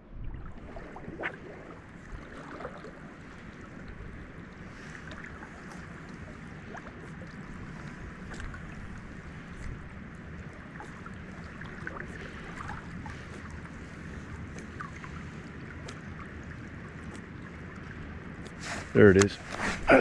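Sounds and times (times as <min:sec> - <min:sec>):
wind: 0:00.0 - 0:20.0
faint light ticks: 0:08.3 - 0:08.6, 0:15.8 - 0:16.2.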